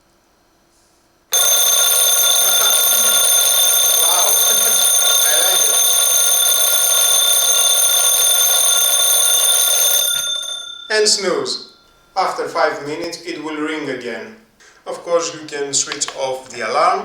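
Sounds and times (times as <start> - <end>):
digital alarm clock ringing: 1.3 - 11.9.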